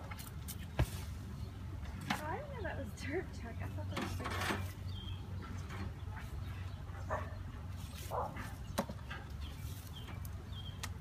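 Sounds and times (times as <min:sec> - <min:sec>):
dog barking: 0:07.0 - 0:07.4, 0:08.1 - 0:08.4.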